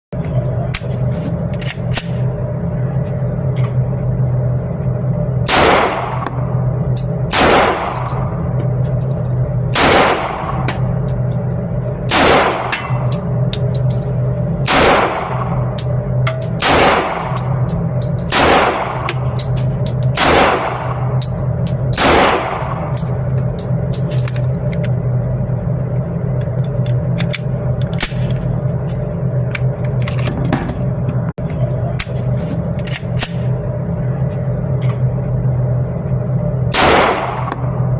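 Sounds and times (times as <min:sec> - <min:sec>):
steady low hum: 0:00.1 - 0:37.9
pistol shots with echo: 0:05.5 - 0:06.2, 0:07.3 - 0:08.1, 0:09.7 - 0:10.7, 0:12.1 - 0:13.0, 0:14.7 - 0:15.6, 0:16.6 - 0:17.3, 0:18.3 - 0:19.2, 0:20.2 - 0:21.1, 0:22.0 - 0:22.8, 0:36.7 - 0:37.6.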